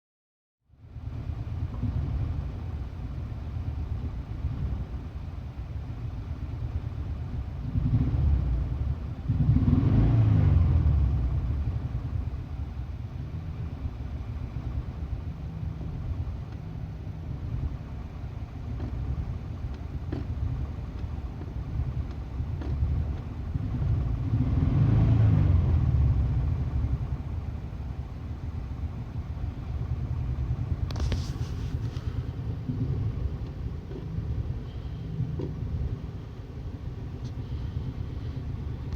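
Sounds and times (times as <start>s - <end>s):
car engine misfiring: 13.7s - 24.7s, 26.3s - 38.9s.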